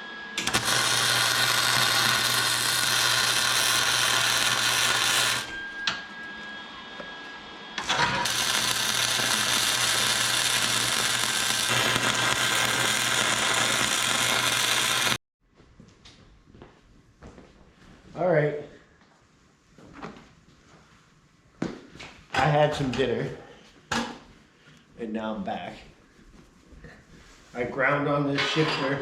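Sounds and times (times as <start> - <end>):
electric welder sizzling hiss: 0.4 - 5.6, 7.8 - 15.2.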